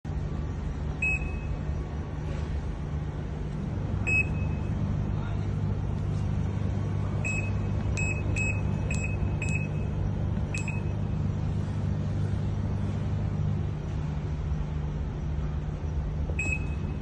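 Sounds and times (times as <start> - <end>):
steady low hum: 0.0 - 17.0
washing machine control panel beeping: 1.0 - 1.7, 4.0 - 4.8, 7.2 - 11.3, 16.3 - 17.0.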